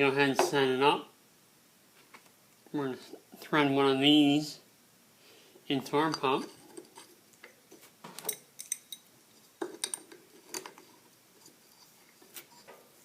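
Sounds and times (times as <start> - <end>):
metal pieces clinking: 8.2 - 10.8.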